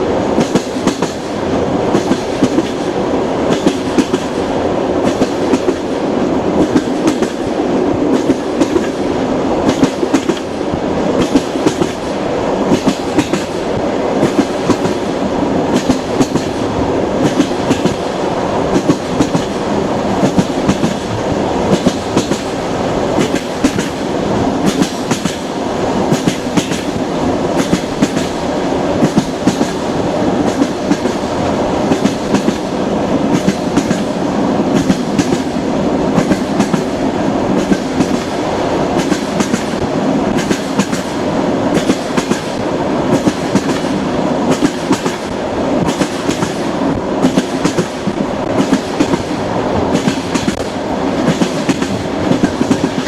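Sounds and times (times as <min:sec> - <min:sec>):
train cars rumbling: 0:00.0 - 0:53.0
wheels clacking over rail joints: 0:00.4 - 0:28.4, 0:29.0 - 0:53.0.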